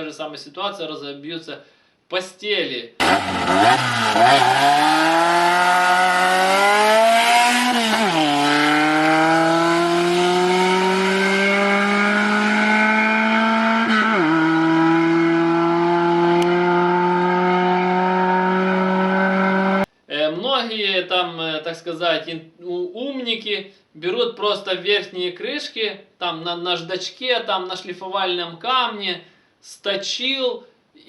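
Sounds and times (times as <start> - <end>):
car engine accelerating: 3.0 - 19.9.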